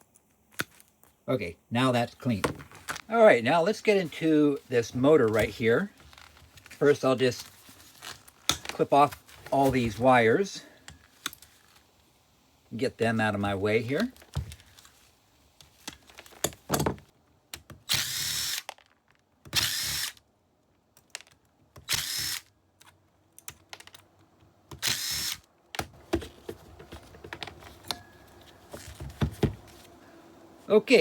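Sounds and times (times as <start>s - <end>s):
power drill bursts: 17.9s - 18.7s, 19.6s - 20.2s, 21.9s - 22.4s, 24.8s - 25.4s
hand tools clicking and knocking: 25.8s - 29.8s.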